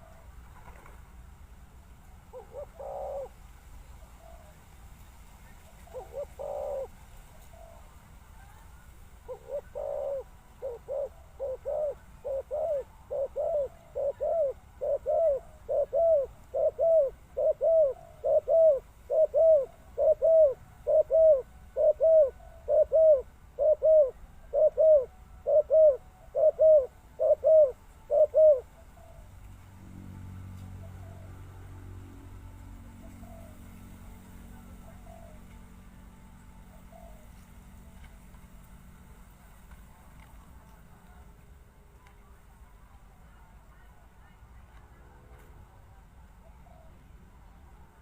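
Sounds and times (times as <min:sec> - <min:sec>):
dove cooing: 0:02.2 - 0:03.4, 0:05.7 - 0:08.0, 0:09.2 - 0:29.4, 0:30.7 - 0:31.5, 0:33.0 - 0:35.8, 0:36.6 - 0:38.2.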